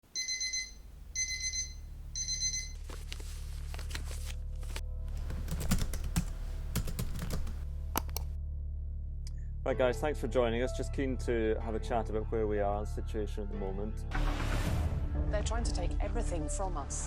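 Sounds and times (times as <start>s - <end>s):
low steady hum: 0.1s - 9.6s
electronic alarm beeping: 0.2s - 2.8s
rapid irregular clicks: 5.2s - 8.3s.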